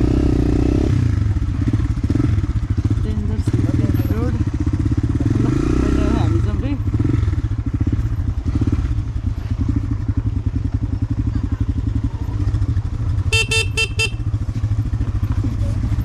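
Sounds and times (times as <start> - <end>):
motorcycle engine running: 0.0 - 16.0
horn tooting: 13.2 - 14.5.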